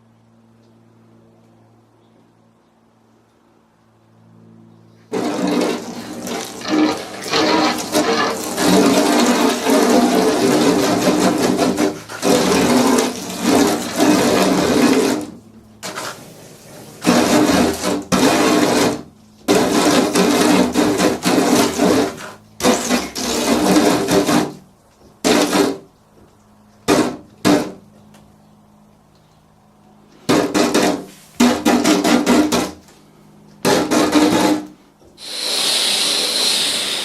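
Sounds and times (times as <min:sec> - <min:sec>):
wiping strokes on window glass: 0:33.7 - 0:37.0.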